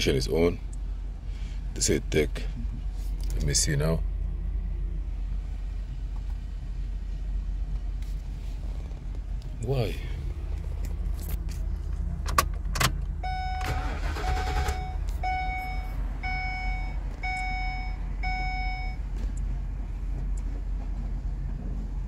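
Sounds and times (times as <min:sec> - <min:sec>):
steady low hum: 0:00.0 - 0:22.0
electronic warning beeps: 0:13.2 - 0:19.0.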